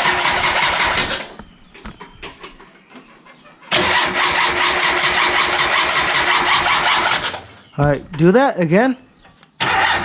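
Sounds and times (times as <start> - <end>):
engine cranking on starter: 0.0 - 1.4, 3.7 - 7.6, 9.6 - 10.0.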